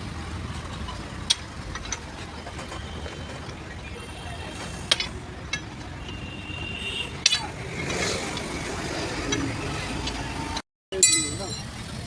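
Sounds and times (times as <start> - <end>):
workshop background noise: 0.0 - 12.0
thin high ringing tone: 11.0 - 11.8.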